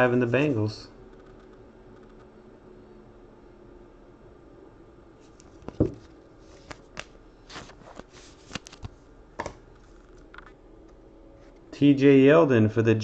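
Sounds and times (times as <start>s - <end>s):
cards clicking and rustling: 5.4s - 10.6s
knock on table: 5.8s - 6.0s.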